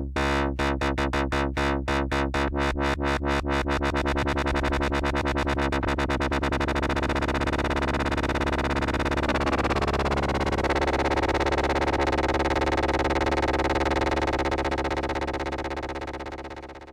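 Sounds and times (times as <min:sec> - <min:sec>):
buzzy pulsing synthesizer note: 0:00.0 - 0:16.9.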